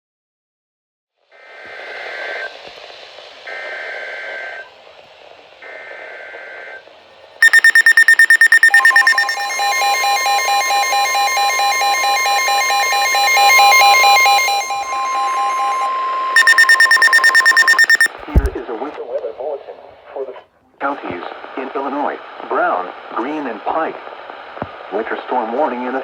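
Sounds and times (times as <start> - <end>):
rapid high-pitched pulsing beeps: 7.4 - 18.6
steady warning tone: 7.4 - 18.6
two-tone digital data warble: 7.4 - 18.6.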